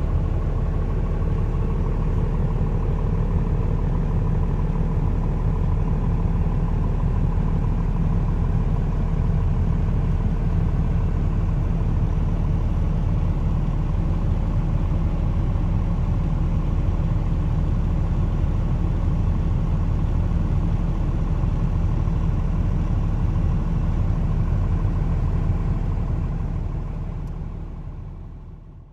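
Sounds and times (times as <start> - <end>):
diesel truck engine running: 0.0 - 28.9.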